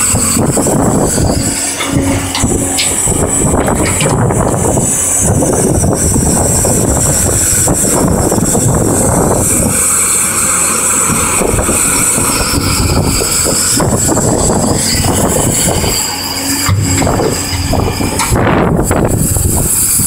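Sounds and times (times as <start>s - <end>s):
excavator engine running: 0.0s - 20.0s
thin high whine: 0.0s - 20.0s.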